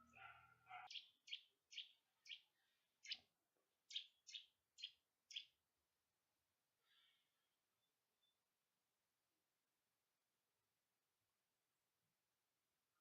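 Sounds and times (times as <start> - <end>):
small bird chirping: 0.0 - 5.6.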